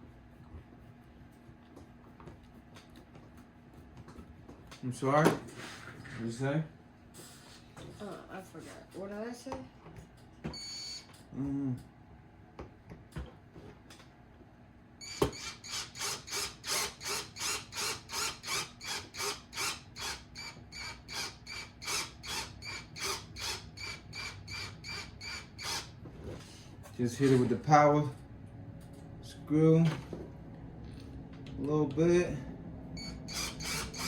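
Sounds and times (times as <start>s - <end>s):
electric screwdriver humming: 15.0s - 25.9s, 33.0s - 34.0s.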